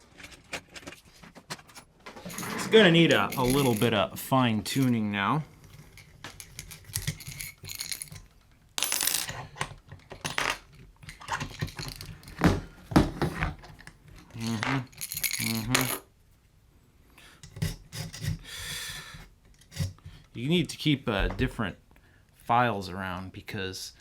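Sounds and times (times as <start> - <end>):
metal parts clinking: 2.1 - 5.0, 5.6 - 12.4, 14.2 - 16.0
metal scraping strokes: 2.1 - 5.0.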